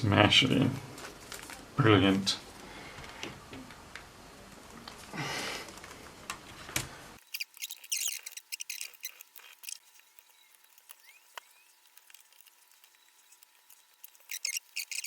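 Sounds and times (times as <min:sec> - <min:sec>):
low background noise: 0:00.0 - 0:15.0
hands working on laptop parts: 0:05.6 - 0:15.0.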